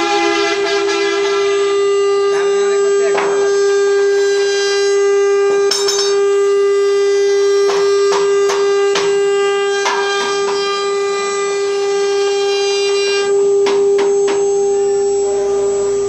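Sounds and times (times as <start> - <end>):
router spindle whining: 0.0 - 16.0
sharp knocks: 7.7 - 9.2.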